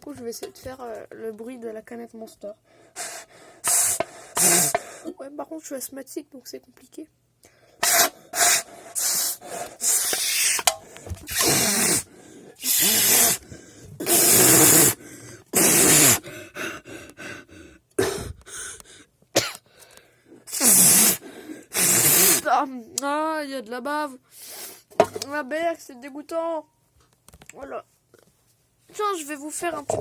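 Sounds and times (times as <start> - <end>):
breath blasts into empty can: 3.0 - 5.0, 7.8 - 13.4, 14.0 - 16.2, 20.5 - 22.4.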